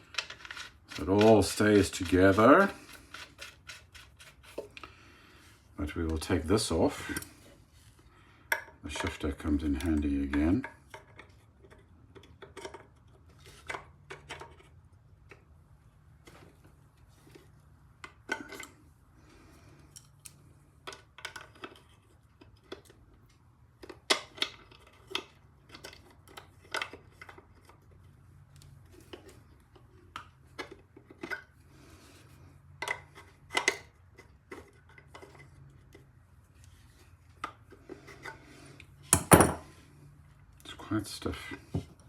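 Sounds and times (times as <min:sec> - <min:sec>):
spanner and metal parts clinking: 0:00.0 - 0:02.7.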